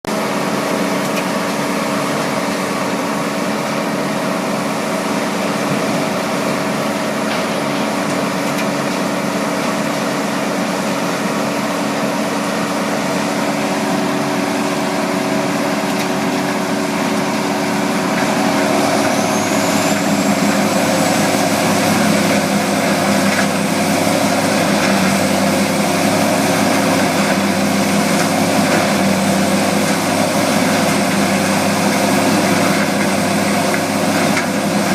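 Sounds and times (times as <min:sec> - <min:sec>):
grinder engine drone: 0:00.1 - 0:34.9
high whine: 0:11.8 - 0:27.9.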